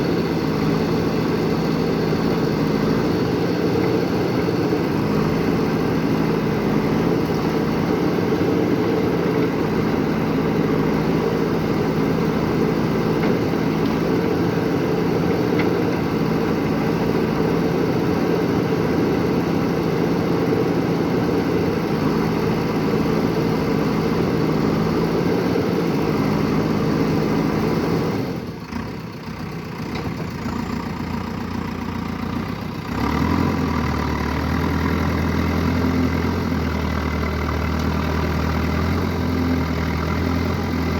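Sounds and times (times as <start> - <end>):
excavator engine running: 0.0 - 40.9.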